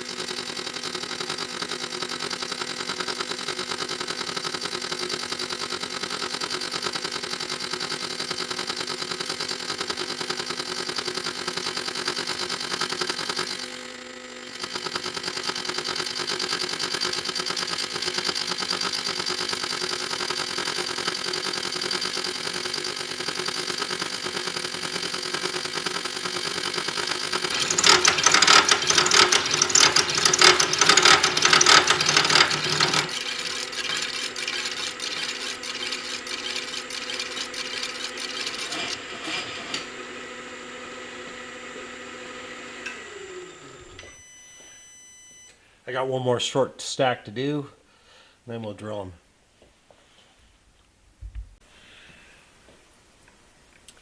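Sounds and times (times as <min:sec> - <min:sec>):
rapid rasping cutting noise: 0:00.0 - 0:39.9
machine tool cutting: 0:00.0 - 0:41.5.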